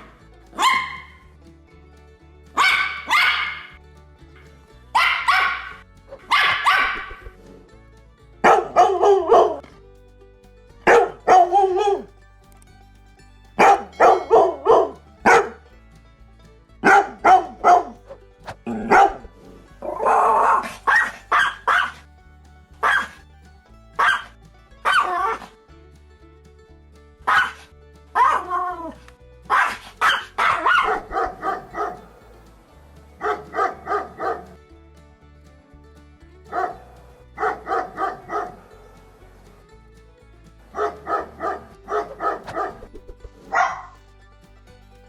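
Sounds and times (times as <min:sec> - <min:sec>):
background music: 0:00.0 - 0:45.0
dog barking: 0:00.6 - 0:01.2, 0:02.6 - 0:03.7, 0:05.0 - 0:07.3, 0:08.4 - 0:09.6, 0:10.9 - 0:12.1, 0:13.6 - 0:15.6, 0:16.8 - 0:18.0, 0:18.7 - 0:22.0, 0:22.8 - 0:23.2, 0:24.0 - 0:24.3, 0:27.3 - 0:27.6, 0:28.2 - 0:32.1, 0:33.2 - 0:34.5, 0:36.5 - 0:36.8, 0:37.4 - 0:38.6, 0:40.7 - 0:44.0.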